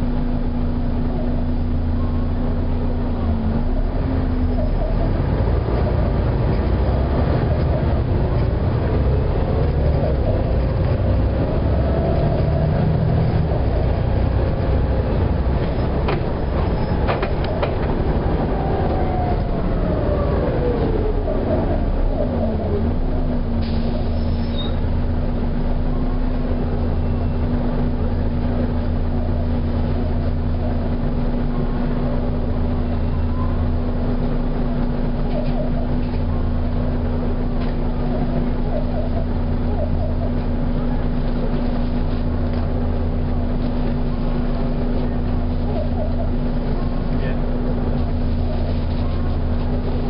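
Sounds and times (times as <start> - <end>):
bus engine whining and droning: 0.0 - 50.0.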